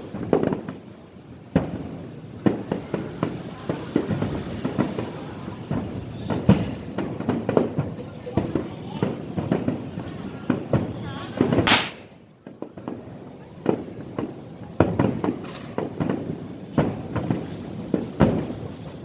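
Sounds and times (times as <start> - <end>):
hissing firework burst: 0.0 - 12.3
fireworks bursting: 0.0 - 19.0.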